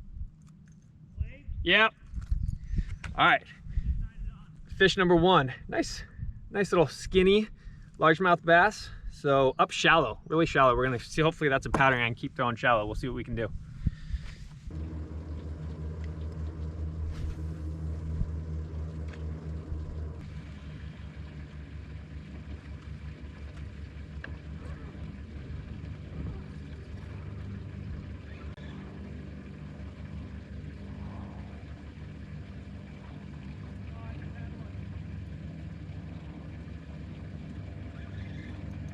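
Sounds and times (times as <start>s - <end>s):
boat motor humming: 8.6s - 38.9s.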